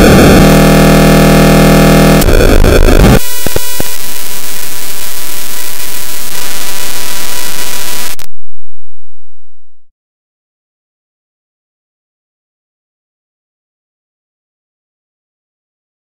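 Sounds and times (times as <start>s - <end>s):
harsh distorted static: 0.0s - 8.3s.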